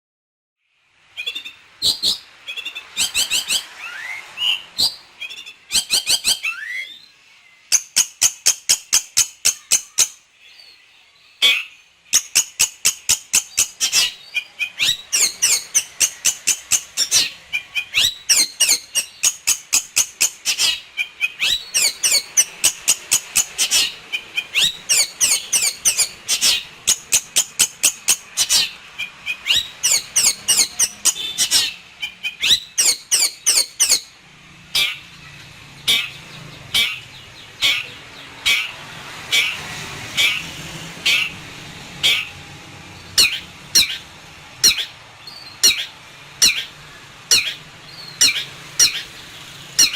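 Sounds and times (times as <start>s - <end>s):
shrike singing: 11.4s - 34.2s.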